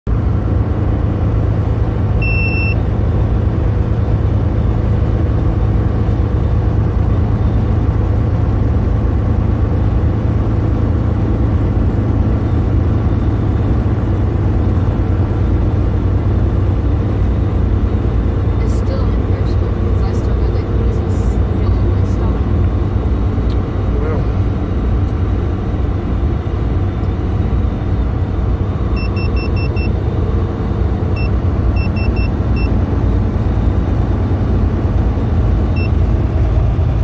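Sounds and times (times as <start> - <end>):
road noise: 0.1 - 37.0
truck engine running: 0.1 - 37.0
electronic beep: 2.2 - 2.8, 29.0 - 30.0, 31.2 - 32.7, 35.7 - 36.0.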